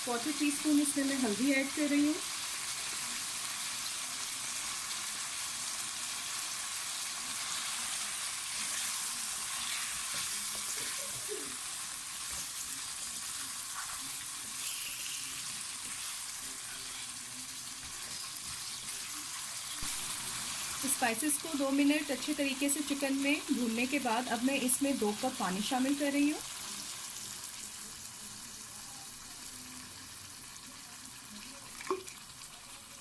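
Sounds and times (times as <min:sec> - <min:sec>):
food sizzling in hot oil: 0:00.0 - 0:33.0.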